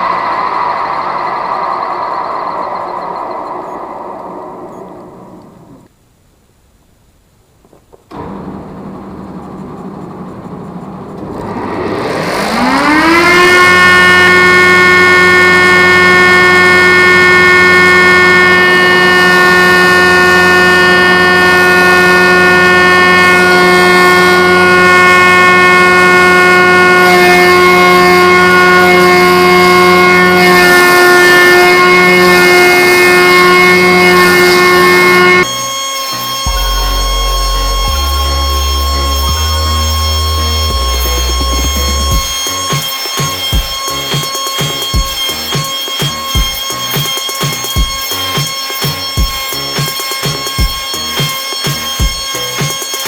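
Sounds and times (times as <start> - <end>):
machine motor whining: 0.0 - 5.9, 8.1 - 53.0.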